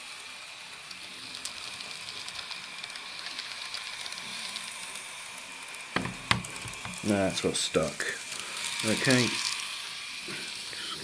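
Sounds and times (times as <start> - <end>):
model locomotive motor whine: 0.0 - 11.0
faint irregular clicking: 0.7 - 7.1.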